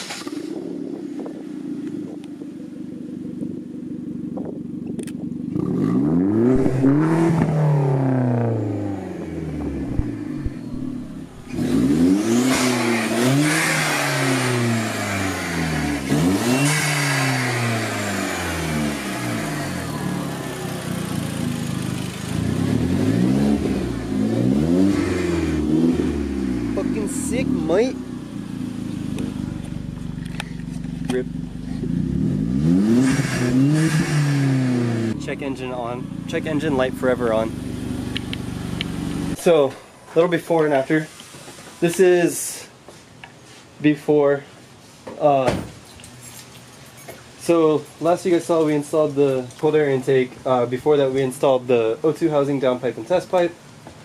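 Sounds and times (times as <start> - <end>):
car engine idling and revving: 0.0 - 39.4.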